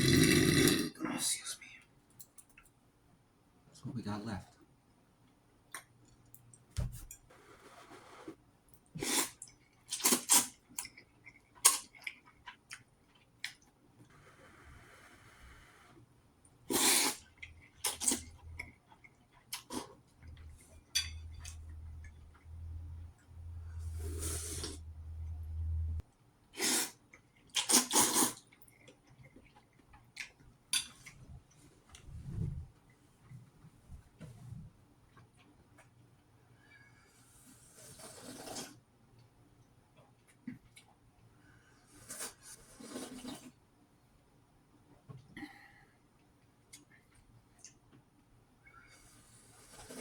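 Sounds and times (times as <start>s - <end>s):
loud noodle slurps: 0.0s - 0.9s, 9.0s - 10.6s, 16.7s - 18.4s, 23.8s - 24.9s, 26.6s - 27.0s, 27.6s - 28.4s, 37.8s - 38.8s, 42.0s - 43.5s
chewing: 9.3s - 13.8s
low steady hum: 17.3s - 26.1s.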